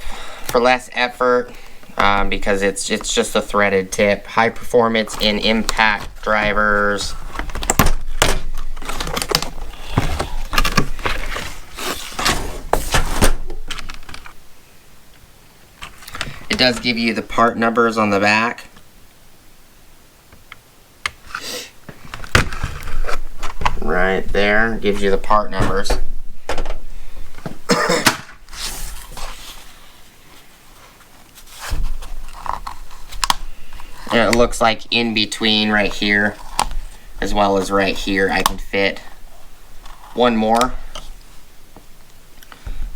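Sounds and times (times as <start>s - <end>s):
plastic packaging rustling: 0.0s - 14.4s, 15.6s - 17.5s, 21.2s - 42.9s.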